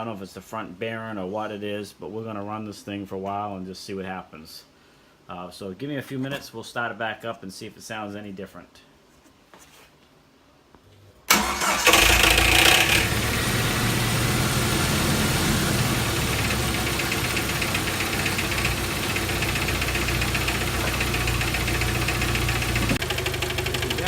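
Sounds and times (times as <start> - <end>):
car engine starting and idling: 11.3 - 24.0.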